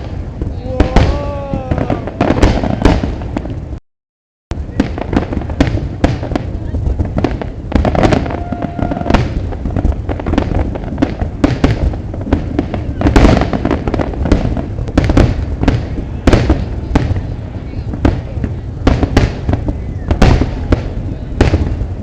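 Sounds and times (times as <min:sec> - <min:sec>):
fireworks bangs and crackles: 0:00.0 - 0:03.8, 0:04.5 - 0:22.0
crowd voices: 0:00.3 - 0:02.9, 0:04.6 - 0:10.0, 0:14.6 - 0:22.0.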